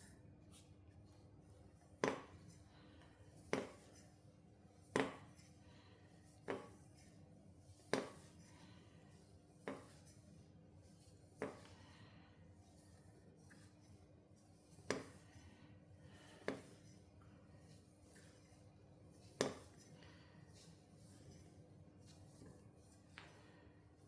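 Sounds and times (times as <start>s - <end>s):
faint steady hum: 0.0s - 24.0s.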